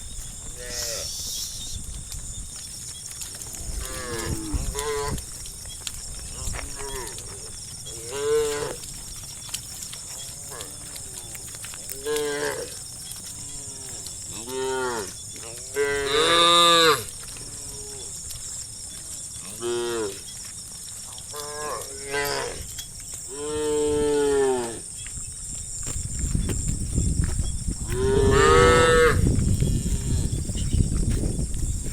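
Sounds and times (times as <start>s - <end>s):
cows mooing: 3.4s - 5.2s, 6.4s - 8.9s, 10.0s - 18.1s, 19.4s - 20.2s, 27.9s - 30.4s.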